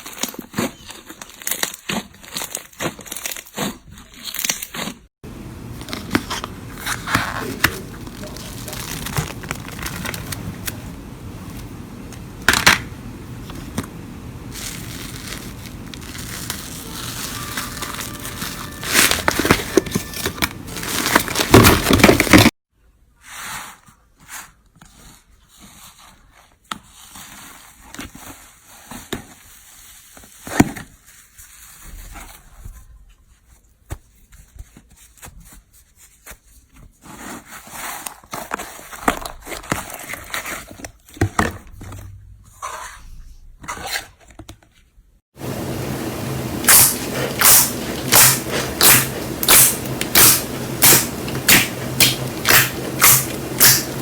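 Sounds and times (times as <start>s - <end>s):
slime squeezed crackling and popping: 7.2s - 10.2s, 14.4s - 22.4s, 46.7s - 54.0s.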